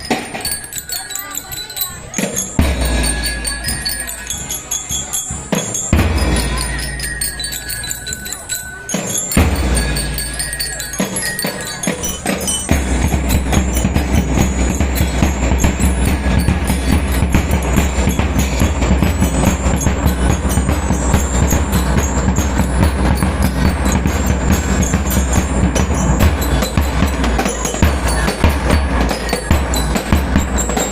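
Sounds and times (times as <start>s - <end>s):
bell lyres ringing a tune: 0.0s - 30.9s
marching drums beating: 2.1s - 30.9s
bass drums: 5.9s - 7.4s, 12.1s - 30.9s.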